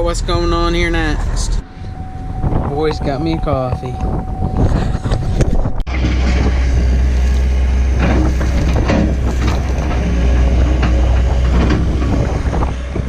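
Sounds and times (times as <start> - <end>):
heavy machine engine droning: 0.0 - 13.0
dirt and stones scraping: 4.6 - 13.0.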